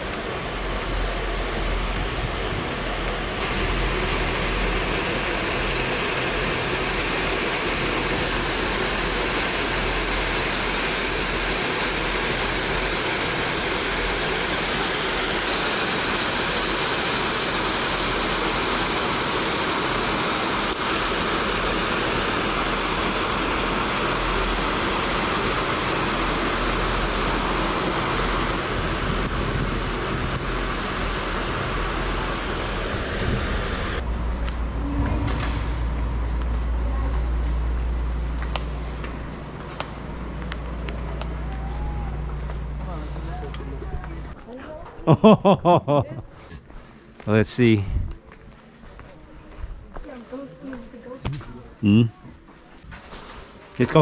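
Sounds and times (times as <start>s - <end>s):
steady rushing noise: 0.0s - 38.7s
low rumble: 22.6s - 44.4s.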